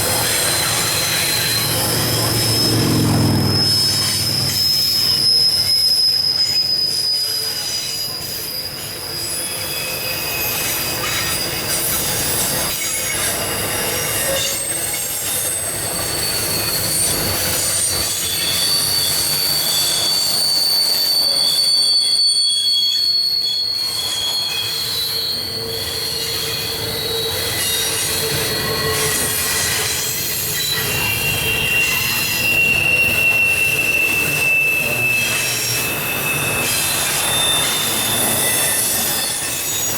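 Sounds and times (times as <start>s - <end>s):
train rumble and clatter: 0.0s - 39.9s
train wheels squealing: 0.0s - 39.9s.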